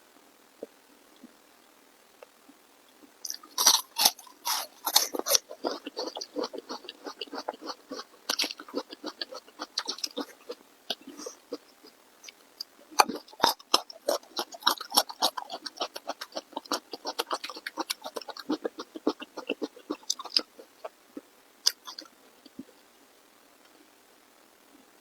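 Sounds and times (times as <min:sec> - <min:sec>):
person chewing food: 0:03.0 - 0:22.8.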